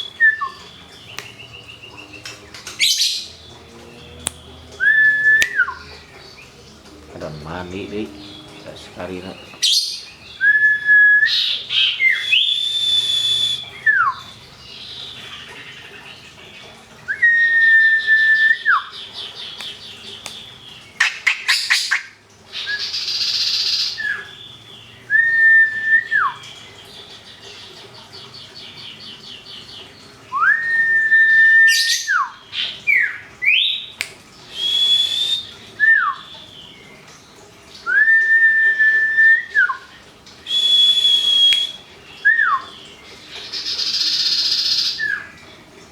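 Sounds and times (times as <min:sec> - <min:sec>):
bird whistles dropping in pitch: 0:12.1 - 0:14.2, 0:30.4 - 0:32.3, 0:34.6 - 0:36.2, 0:40.5 - 0:42.7
sharp bird clicks: 0:19.6 - 0:22.0.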